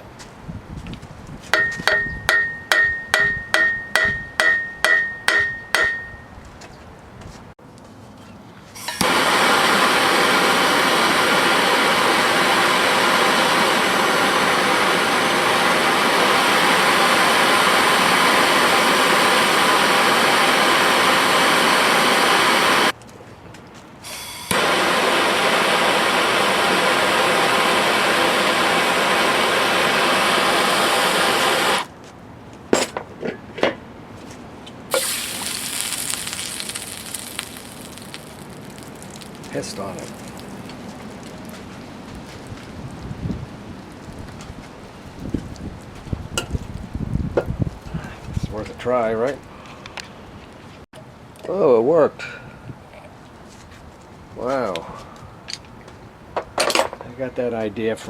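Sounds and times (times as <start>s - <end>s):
sharp metal taps: 1.5s - 6.2s
torch flame hissing: 8.8s - 22.9s, 24.0s - 31.9s, 34.9s - 41.3s.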